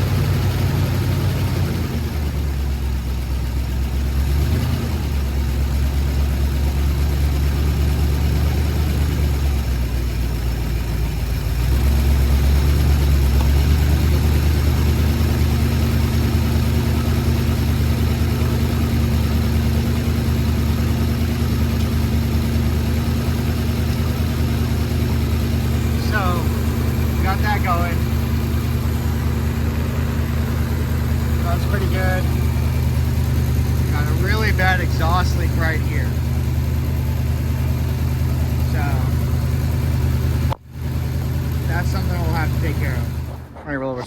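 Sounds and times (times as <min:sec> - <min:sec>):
car engine idling: 0:00.0 - 0:44.0.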